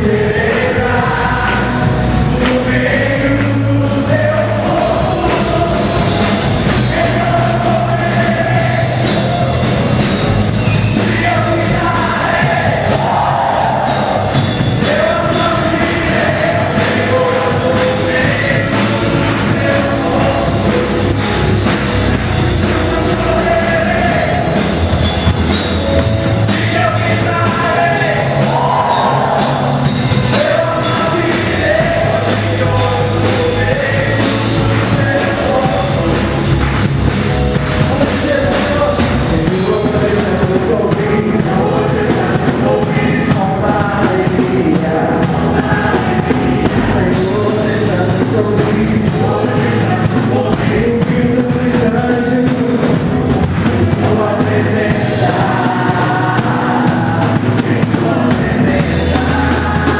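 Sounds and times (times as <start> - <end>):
drum kit beat: 0.0 - 59.9
voices singing gospel rock song: 0.0 - 59.9.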